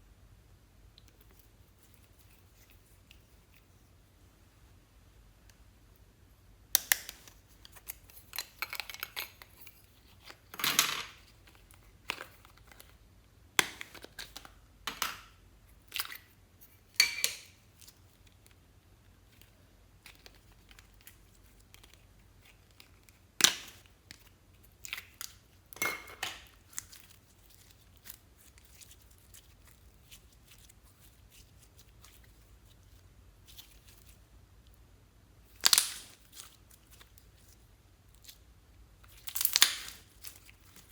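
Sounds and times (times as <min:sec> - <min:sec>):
slime being mixed: 0:26.4 - 0:34.2.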